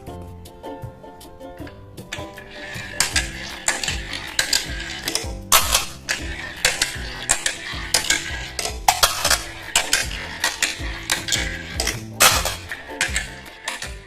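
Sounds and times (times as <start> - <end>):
marbles clattering on marble run: 2.1 - 14.0.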